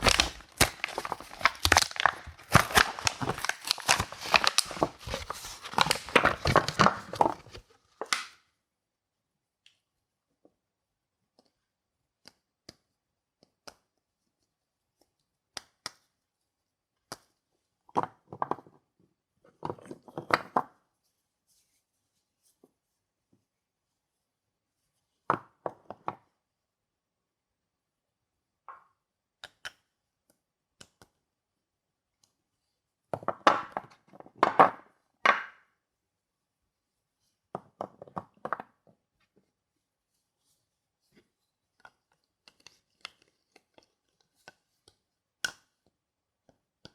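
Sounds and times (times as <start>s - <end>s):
packaging rustling: 0.0s - 8.2s
soap bars tapping: 0.0s - 8.2s.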